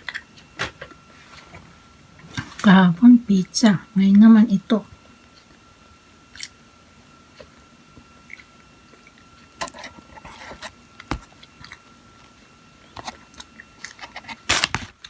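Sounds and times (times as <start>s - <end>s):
person chewing close up: 5.3s - 5.6s, 6.2s - 14.6s.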